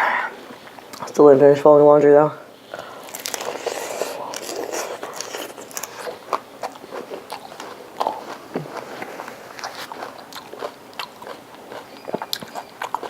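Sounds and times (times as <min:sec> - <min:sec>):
person chewing and biting: 0:03.0 - 0:13.0.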